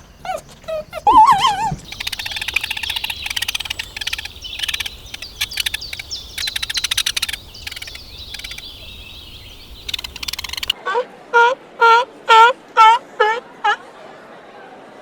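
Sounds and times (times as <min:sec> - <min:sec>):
loud wavering animal call: 0:00.0 - 0:04.4.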